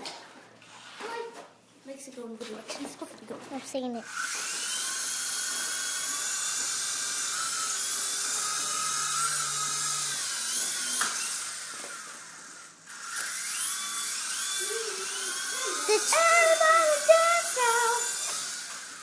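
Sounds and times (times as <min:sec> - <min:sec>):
toy helicopter motor whining: 0:04.0 - 0:19.0.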